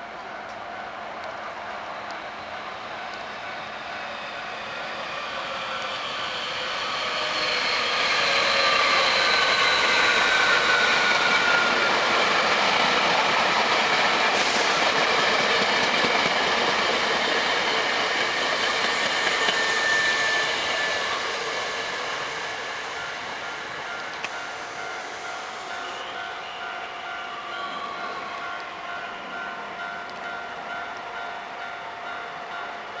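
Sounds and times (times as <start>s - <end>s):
train wheels clattering on rails: 0.1s - 27.2s
level crossing warning bell: 22.2s - 33.0s.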